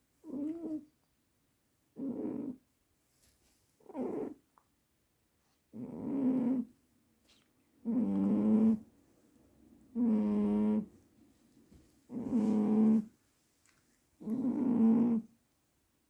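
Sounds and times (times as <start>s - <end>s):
cat snoring: 2.0s - 2.6s, 3.9s - 4.4s, 5.7s - 6.7s, 7.8s - 8.9s, 9.9s - 10.9s, 12.1s - 13.1s, 14.2s - 15.3s.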